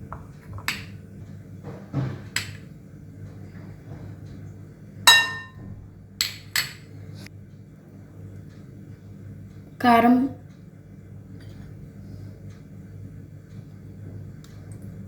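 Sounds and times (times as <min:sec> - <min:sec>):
spoon clinking against bowl: 0:05.1 - 0:05.6.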